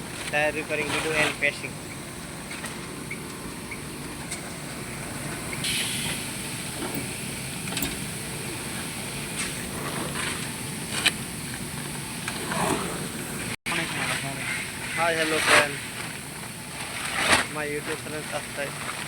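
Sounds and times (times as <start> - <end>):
motor hum: 0.0 - 19.0
hissing burst: 5.6 - 6.8.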